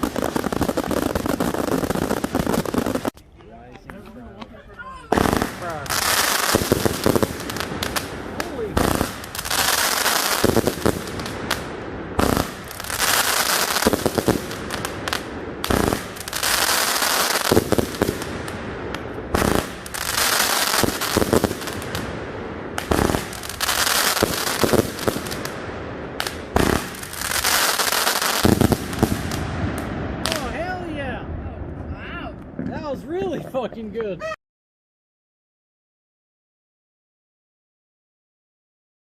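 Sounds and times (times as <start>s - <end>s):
firework shots with crackling hiss: 0.0s - 3.2s, 5.1s - 31.1s.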